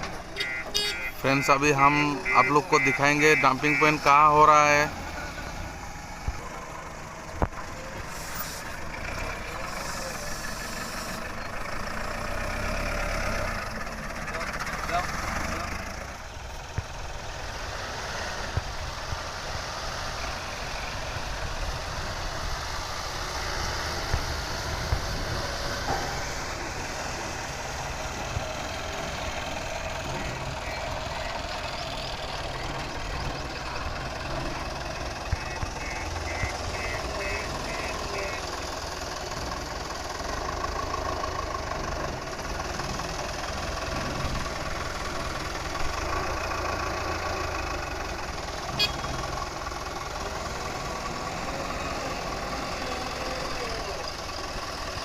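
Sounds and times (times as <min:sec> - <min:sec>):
diesel engines of heavy machinery: 0:00.0 - 0:55.0
reversing alarm beeping: 0:00.4 - 0:01.5, 0:02.2 - 0:04.0, 0:48.8 - 0:49.1.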